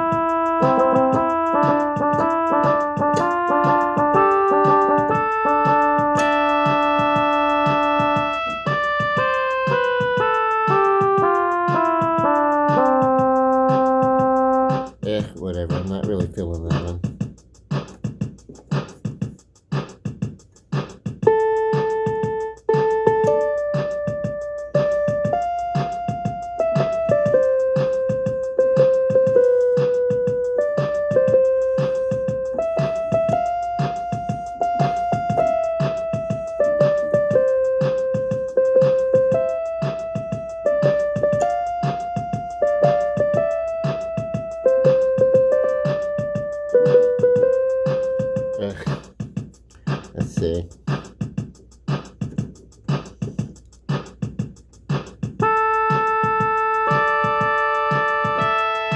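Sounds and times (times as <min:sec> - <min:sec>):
electronic keyboard melody: 0:00.0 - 0:58.9
keyboard drum rhythm: 0:00.0 - 0:58.9.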